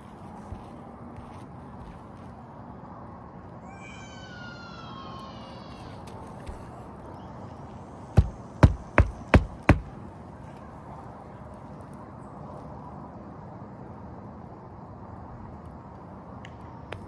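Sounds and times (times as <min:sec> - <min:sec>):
hatchet hammering nail: 0:08.2 - 0:09.9.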